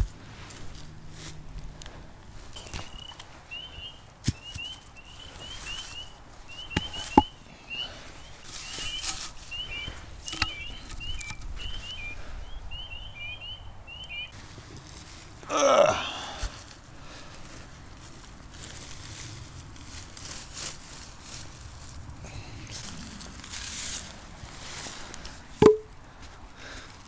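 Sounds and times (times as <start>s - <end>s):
sharp knocks: 25.6s - 25.9s.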